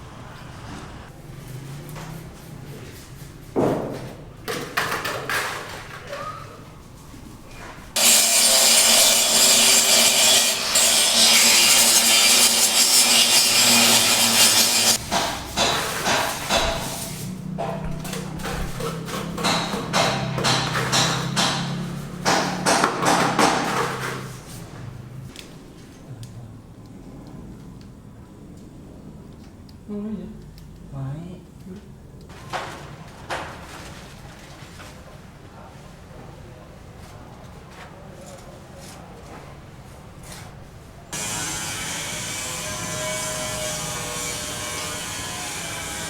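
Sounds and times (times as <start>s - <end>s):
power tool rasping: 8.0s - 17.0s, 41.2s - 46.0s
scattered knocks: 14.9s - 17.0s, 17.6s - 24.3s.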